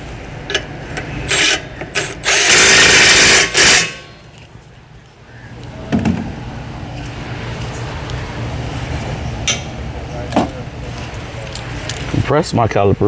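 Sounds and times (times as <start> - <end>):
impact wrench bursts: 0.5 - 4.2.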